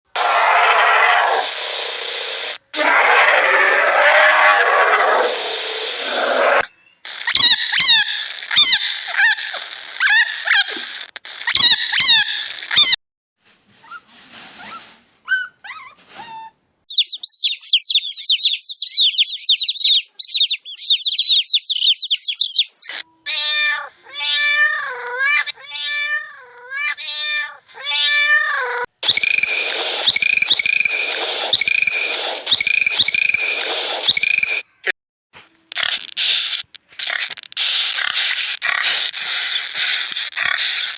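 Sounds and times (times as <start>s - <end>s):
wavering animal calls: 2.7s - 10.7s
rapid high chirping: 16.9s - 22.8s, 29.0s - 34.7s
steady hiss: 29.0s - 34.6s.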